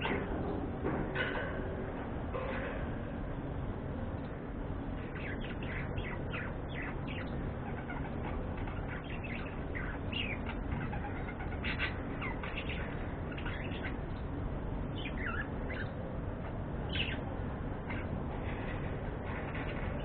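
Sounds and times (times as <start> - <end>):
steady background noise: 0.0 - 20.0
budgerigars chirping: 5.0 - 14.2, 14.9 - 16.0, 16.9 - 17.2.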